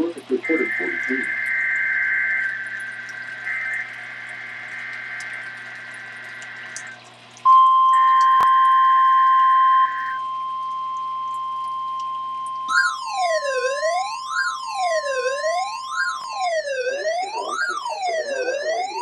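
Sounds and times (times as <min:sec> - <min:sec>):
buzzy digital data bursts: 0:00.0 - 0:07.0
loud steady alert tone: 0:00.0 - 0:19.0
quieter steady alert tone: 0:00.3 - 0:19.0.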